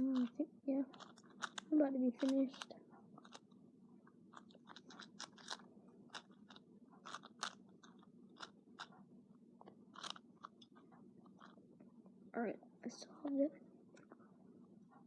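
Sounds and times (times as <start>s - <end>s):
low steady hum: 0.0s - 15.0s
plastic puzzle cube clicking: 0.1s - 3.4s, 4.3s - 8.9s, 9.9s - 10.8s.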